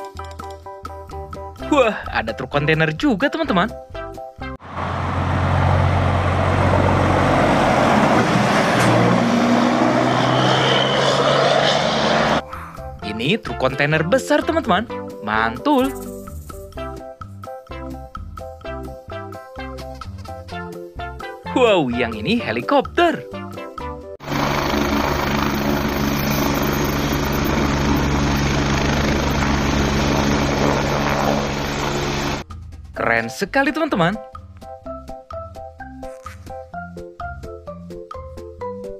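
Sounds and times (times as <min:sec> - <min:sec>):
heavy truck engine running: 0:04.6 - 0:12.4
helicopter engine whine: 0:04.6 - 0:12.4, 0:24.2 - 0:32.4
helicopter rotor beating: 0:04.8 - 0:12.4, 0:15.8 - 0:16.8, 0:24.2 - 0:32.4.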